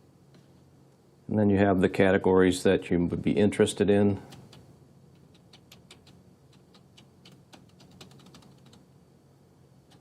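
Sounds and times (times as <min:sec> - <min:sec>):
computer keys and mouse clicking: 0:05.2 - 0:08.8.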